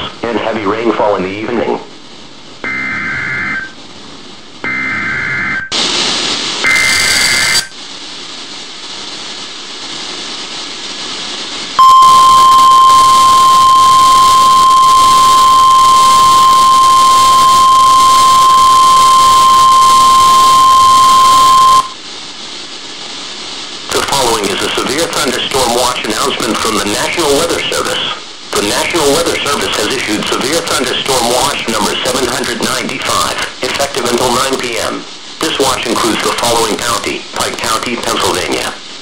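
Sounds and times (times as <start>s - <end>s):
radio static hiss: 0.0s - 39.0s
buzzy two-tone digital data bursts: 6.6s - 7.7s, 11.8s - 22.0s.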